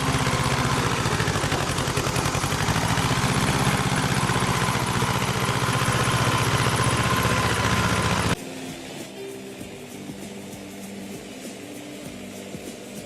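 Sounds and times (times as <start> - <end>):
tractor engine chugging: 0.0 - 8.4
quiet music: 8.3 - 13.0.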